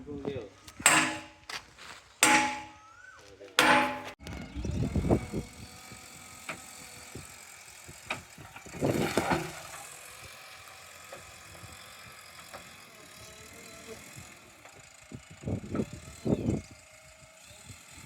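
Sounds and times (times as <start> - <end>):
scattered knocks: 0.8 - 1.4, 2.2 - 2.8, 3.6 - 4.2
loud metallic clangs: 0.8 - 1.5, 2.2 - 2.8, 3.6 - 4.2.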